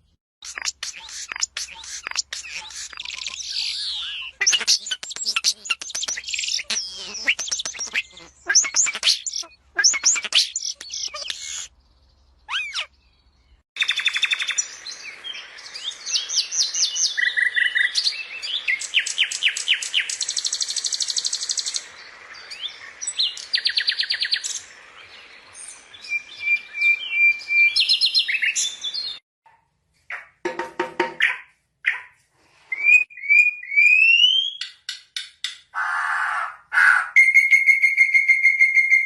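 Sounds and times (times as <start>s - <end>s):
songbird singing trills: 0.4s - 29.2s.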